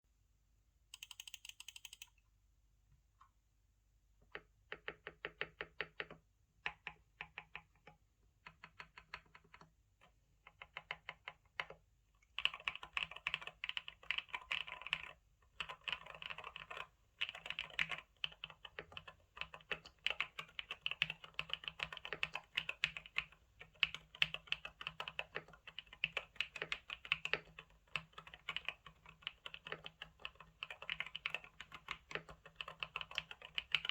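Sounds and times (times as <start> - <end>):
typing on mechanical keyboard: 1.0 - 2.1, 10.5 - 11.8, 12.4 - 33.9.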